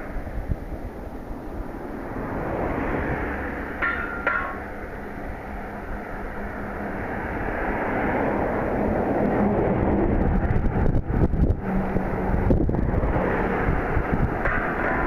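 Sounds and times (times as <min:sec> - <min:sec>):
wind on microphone: 0:00.0 - 0:03.6, 0:07.0 - 0:15.0
electric train rumble: 0:00.0 - 0:15.0.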